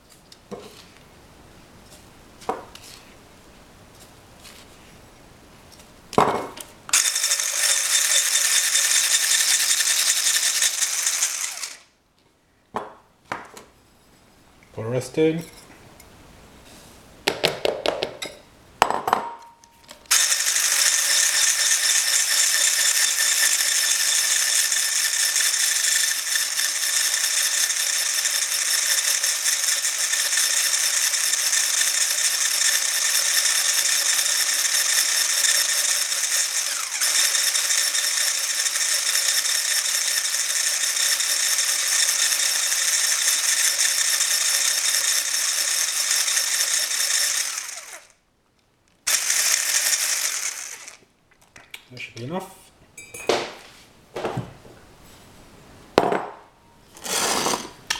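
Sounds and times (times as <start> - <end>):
electric whisk beating batter: 7.0 - 11.8, 20.1 - 48.1, 49.1 - 51.0
clinks against a bowl: 53.0 - 53.4.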